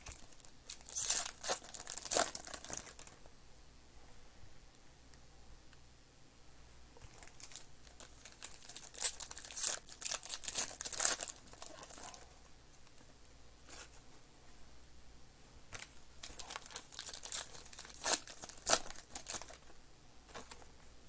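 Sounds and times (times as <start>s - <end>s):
card packaging crinkling and tearing: 0.0s - 3.2s, 7.1s - 12.2s, 15.8s - 19.7s.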